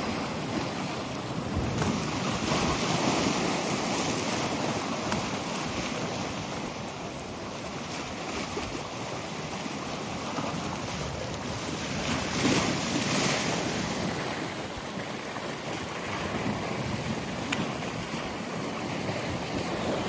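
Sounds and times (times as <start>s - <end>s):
wind buffeting microphone: 0.0s - 6.8s
waves breaking on shore: 0.0s - 20.0s.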